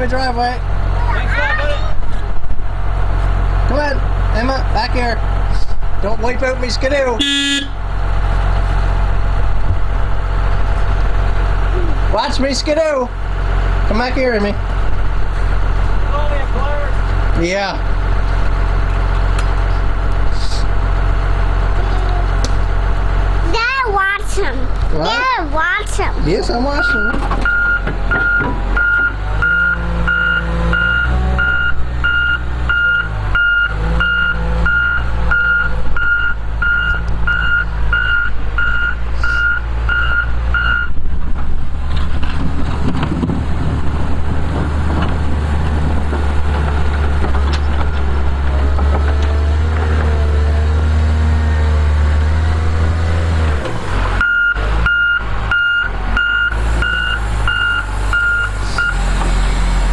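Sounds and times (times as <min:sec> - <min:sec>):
machine engine running: 0:00.0 - 0:35.2, 0:41.3 - 0:59.9
backup alarm beeping: 0:26.8 - 0:41.0, 0:54.2 - 0:59.0.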